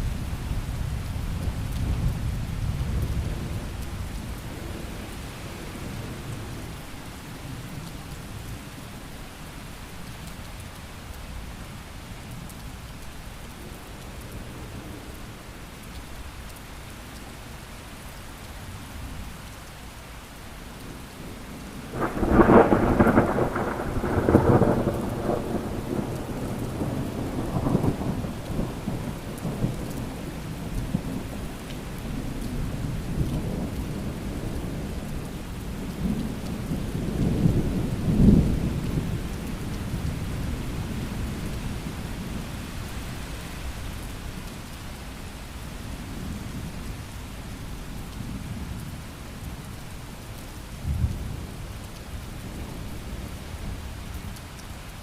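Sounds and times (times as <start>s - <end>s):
rain falling: 0.0s - 55.0s
thunder rumbling: 21.8s - 31.3s
loud thunderclap: 21.9s - 28.7s.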